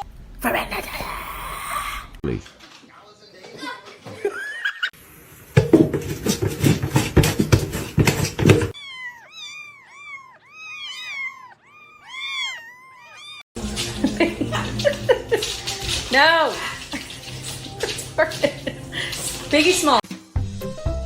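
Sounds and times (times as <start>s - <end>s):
cat meowing: 8.8s - 13.5s.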